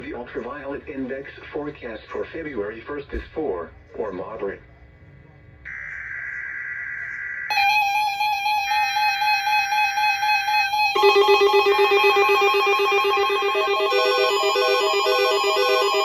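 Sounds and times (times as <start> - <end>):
multi-tone electronic alert: 5.7 - 16.0
steady electronic alert tone: 5.7 - 16.0
alternating two-note beeps: 7.5 - 16.0.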